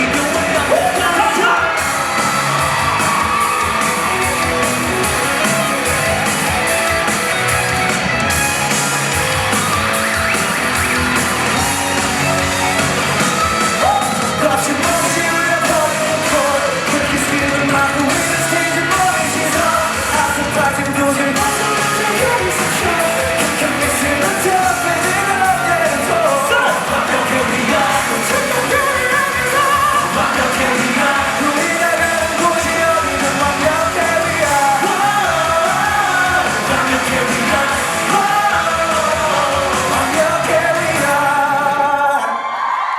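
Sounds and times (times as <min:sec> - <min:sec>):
person singing lead vocals: 0:00.0 - 0:03.8, 0:13.8 - 0:42.9
rock band playing live: 0:00.0 - 0:42.0.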